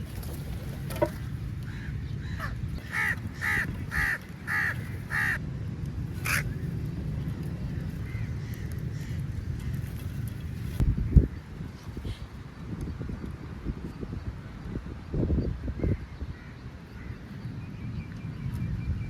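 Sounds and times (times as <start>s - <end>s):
steady low rumble: 0.0s - 12.2s
crow cawing: 1.7s - 5.4s, 6.2s - 6.4s.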